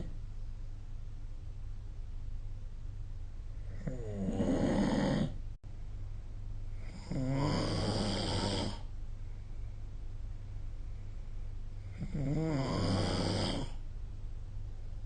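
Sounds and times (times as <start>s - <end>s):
steady low hum: 0.0s - 15.0s
person snoring: 3.7s - 5.4s, 6.8s - 8.9s, 11.8s - 13.8s.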